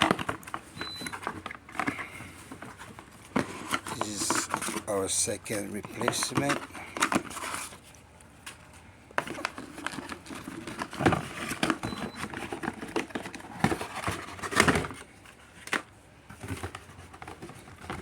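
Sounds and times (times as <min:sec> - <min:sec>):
packaging rustling and crinkling: 0:05.8 - 0:15.8.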